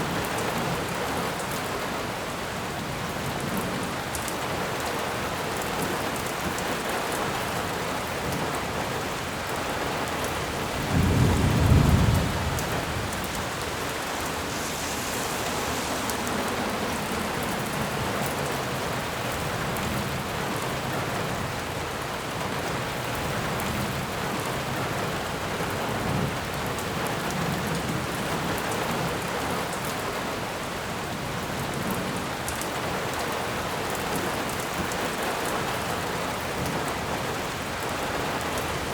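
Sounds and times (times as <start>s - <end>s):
steady rain: 0.0s - 38.9s
deep rumble: 11.0s - 20.2s.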